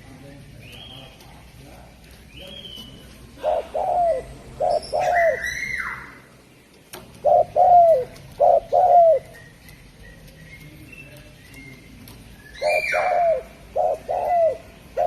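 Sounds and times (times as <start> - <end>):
dove cooing: 3.3 - 5.7, 7.1 - 10.0, 12.5 - 15.0.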